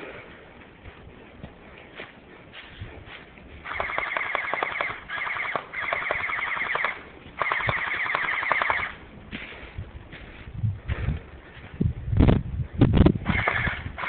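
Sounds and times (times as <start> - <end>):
airsoft machine gun bursts: 3.6 - 9.0, 13.3 - 14.0.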